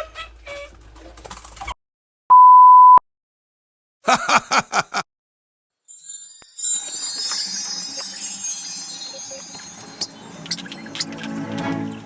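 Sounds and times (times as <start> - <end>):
electronic bleep: 2.3 - 3.0.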